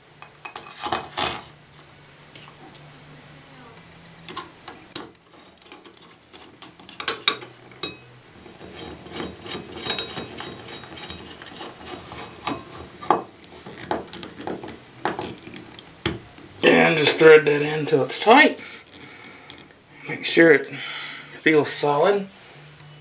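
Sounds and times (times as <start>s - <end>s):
screw scraping and clicking: 5.0s - 7.5s, 8.4s - 15.9s.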